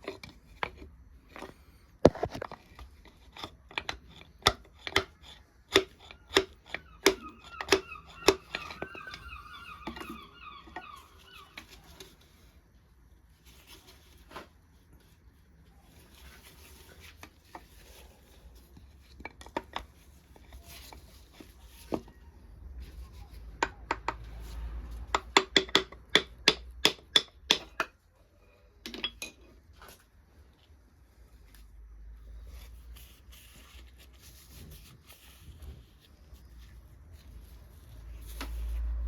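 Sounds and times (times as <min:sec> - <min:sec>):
metal tools and engine parts clinking: 0:28.9 - 0:29.5.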